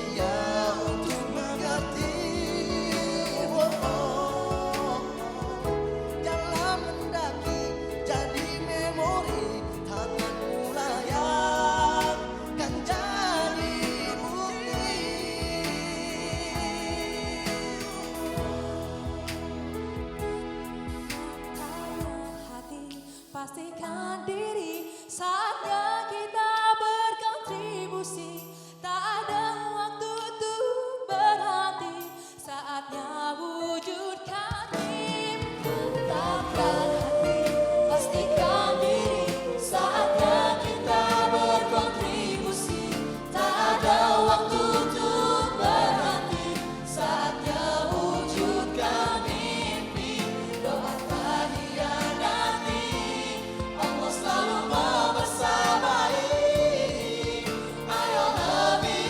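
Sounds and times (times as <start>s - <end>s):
band with drums and bass: 0.0s - 22.4s, 34.8s - 59.0s
vocal group singing in harmony: 0.0s - 33.1s, 33.7s - 59.0s.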